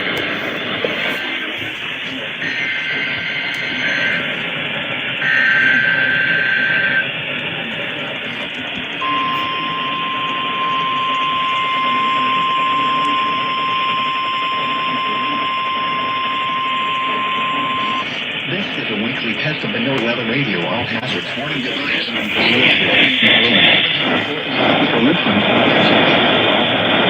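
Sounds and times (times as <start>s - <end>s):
warbling digital header tones: 0.0s - 18.7s, 20.9s - 25.9s
steady warning alarm tone: 0.0s - 19.4s, 21.0s - 27.0s
receiver static: 0.0s - 27.0s.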